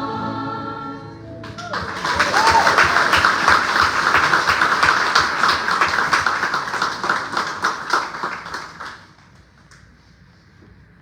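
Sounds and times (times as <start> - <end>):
congregation applauding: 1.4 - 10.0.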